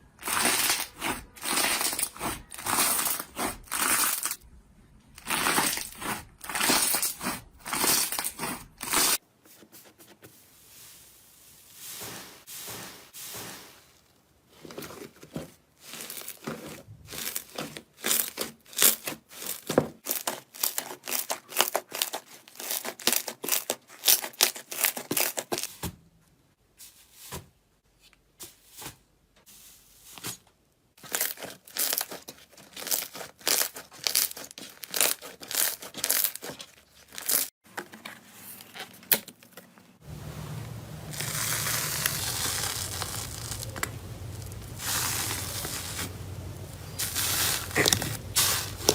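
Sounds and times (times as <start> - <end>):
rustling hiss: 10.4 - 14.1, 40.0 - 48.9
slime crackling and popping: 41.1 - 48.9.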